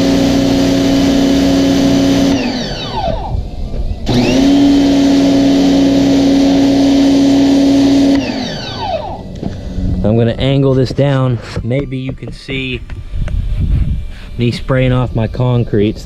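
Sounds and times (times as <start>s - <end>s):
pressure washer motor humming: 0.0s - 10.1s.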